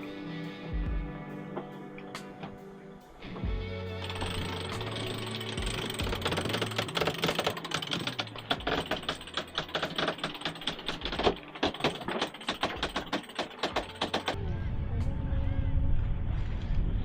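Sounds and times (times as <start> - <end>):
rapid irregular clicking: 4.0 - 14.4.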